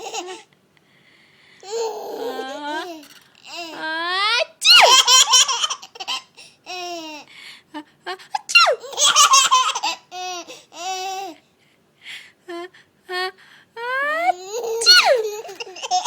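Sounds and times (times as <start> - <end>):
baby laughing: 0.0 - 0.5, 4.7 - 7.2, 8.7 - 11.4, 14.3 - 16.0
person sneezing: 14.8 - 15.2.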